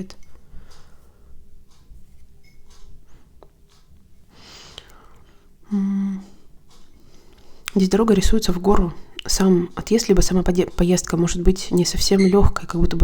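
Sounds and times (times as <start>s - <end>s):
woman breathing: 0.4s - 1.5s, 4.3s - 7.7s
woman humming: 5.6s - 6.4s.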